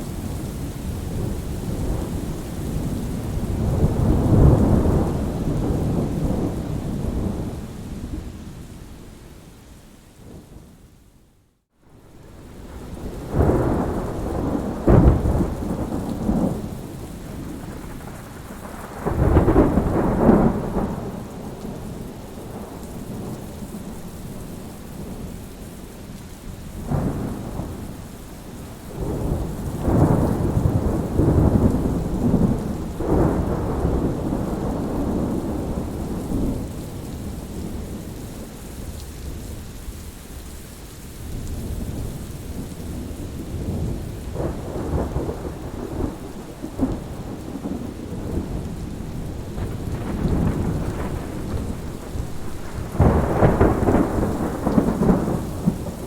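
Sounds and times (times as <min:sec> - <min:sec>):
thunder rumbling: 0:00.0 - 0:08.3, 0:12.0 - 0:25.3, 0:28.9 - 0:38.5, 0:41.6 - 0:56.0
steady rain: 0:00.0 - 0:56.0
sharp thunder crack: 0:43.6 - 0:56.0.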